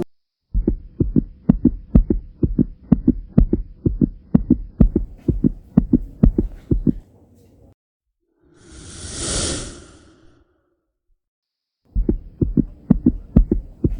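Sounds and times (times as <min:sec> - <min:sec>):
heartbeat thumps: 0:00.0 - 0:07.1, 0:11.9 - 0:13.9
faint hum: 0:11.9 - 0:13.9.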